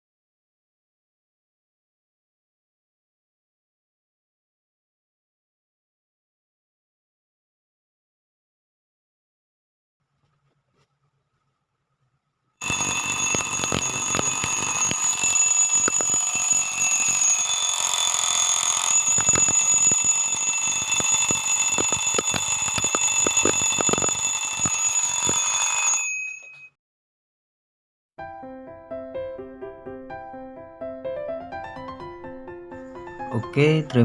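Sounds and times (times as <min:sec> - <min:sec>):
bell alarm clock ringing: 0:12.6 - 0:26.7.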